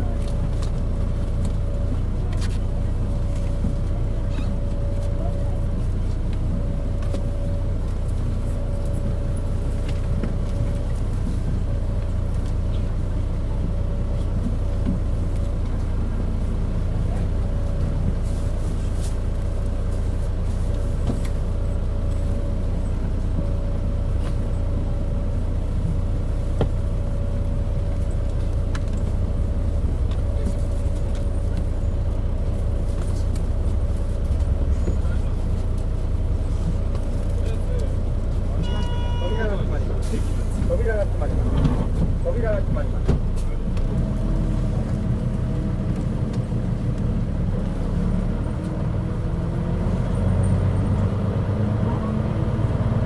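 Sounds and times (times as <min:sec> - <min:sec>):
bus engine drone: 0:00.0 - 0:53.0.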